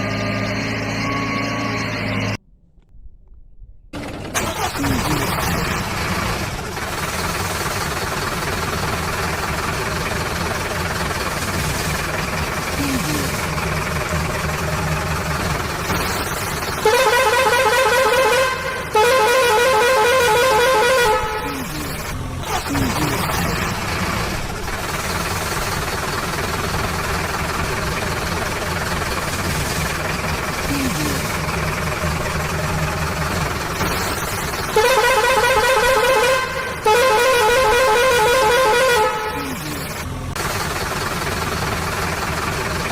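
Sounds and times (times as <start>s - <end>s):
engine-like hum: 0.0s - 42.9s
electronic toy horn warbling: 16.7s - 22.2s, 33.8s - 40.0s.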